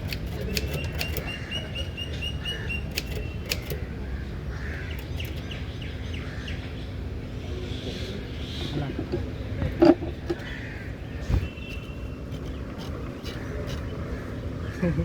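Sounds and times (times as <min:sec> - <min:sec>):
street background noise: 0:00.0 - 0:15.0
small bird chirping: 0:00.4 - 0:03.8, 0:04.8 - 0:06.6, 0:10.0 - 0:14.8
typewriter keys clacking: 0:02.9 - 0:03.8.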